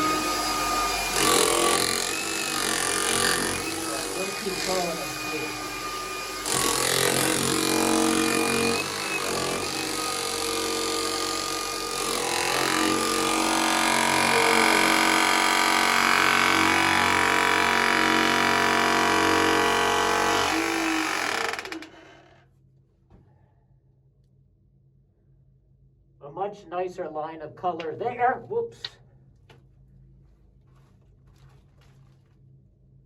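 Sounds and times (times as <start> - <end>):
electric breaker hammering rock: 0.0 - 22.2.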